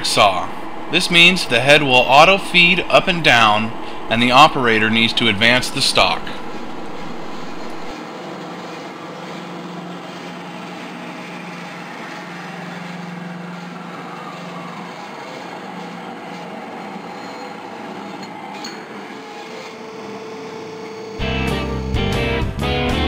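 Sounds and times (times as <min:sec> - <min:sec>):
bandsaw running: 0:00.0 - 0:22.4.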